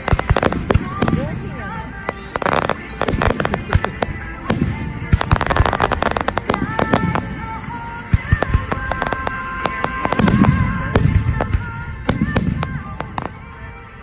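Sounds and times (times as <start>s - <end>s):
fireworks bangs and crackles: 0.0s - 14.0s.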